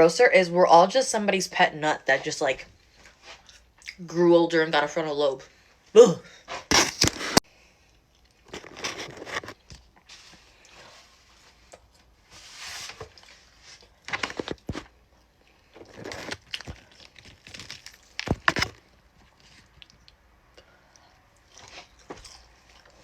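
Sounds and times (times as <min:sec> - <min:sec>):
crunchy chewing: 0:06.7 - 0:10.8, 0:13.1 - 0:20.2, 0:20.8 - 0:23.0.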